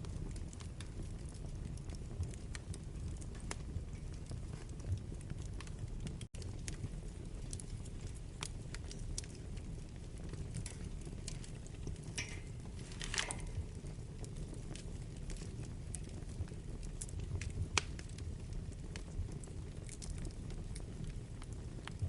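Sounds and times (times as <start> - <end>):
fire crackling and snapping: 0.0 - 22.0
low rumble of flames: 0.0 - 22.0
fire hissing: 6.6 - 18.4
sharp pop from fire: 12.2 - 13.7.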